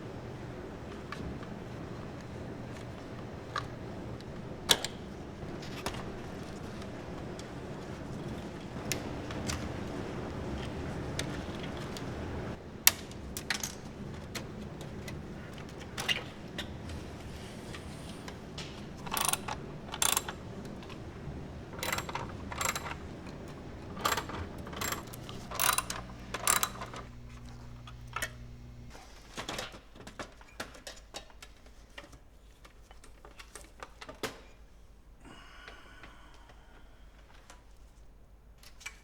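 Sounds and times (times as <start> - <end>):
low steady hum: 16.9 - 29.0
computer parts clicking and knocking: 18.6 - 28.4.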